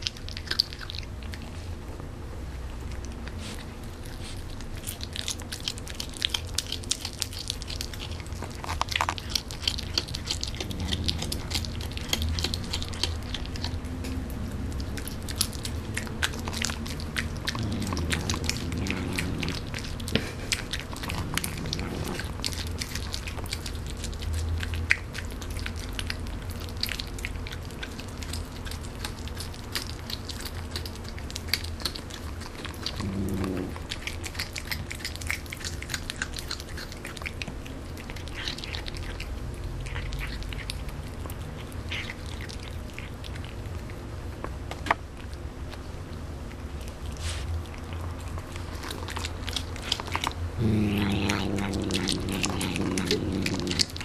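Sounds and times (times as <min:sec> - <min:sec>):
cat chewing meat: 0:00.0 - 0:54.0
cat humming while eating: 0:03.1 - 0:44.1, 0:47.0 - 0:54.0.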